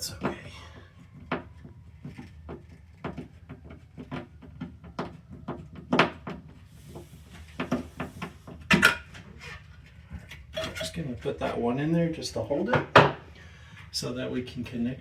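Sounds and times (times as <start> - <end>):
knocks and clicks of handling: 1.1 - 9.4.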